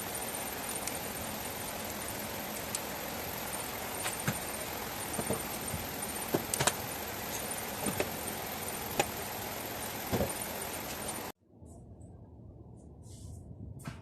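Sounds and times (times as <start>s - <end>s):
steady hiss: 0.0s - 11.3s.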